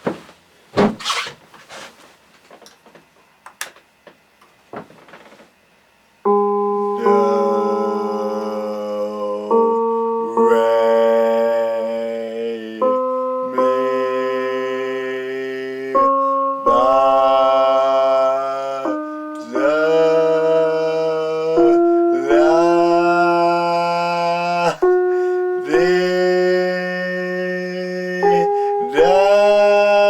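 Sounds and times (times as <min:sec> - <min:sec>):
slow sustained chords: 0:06.3 - 0:30.0.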